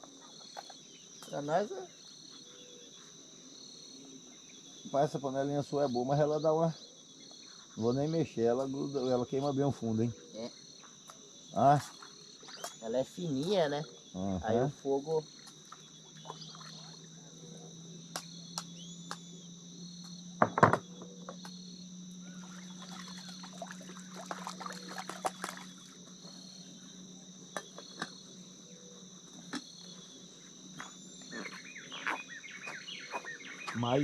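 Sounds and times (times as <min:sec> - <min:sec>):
insects chorus: 0:00.0 - 0:34.0.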